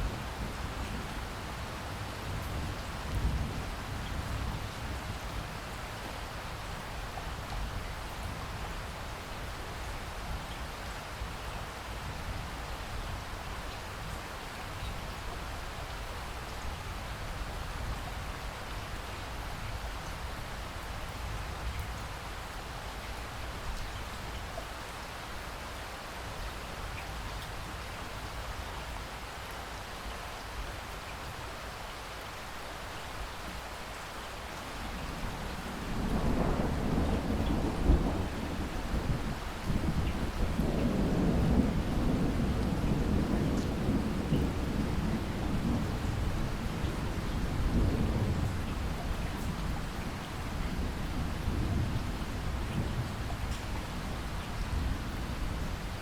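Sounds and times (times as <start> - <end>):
steady rainfall: 0.0 - 56.0
raindrop ticks: 52.7 - 53.9.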